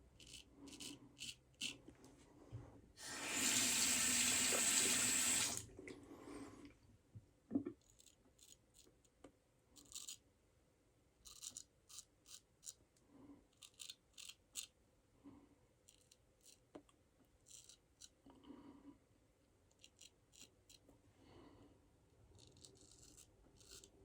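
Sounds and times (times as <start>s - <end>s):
razor scraping stubble: 22.3s - 24.0s.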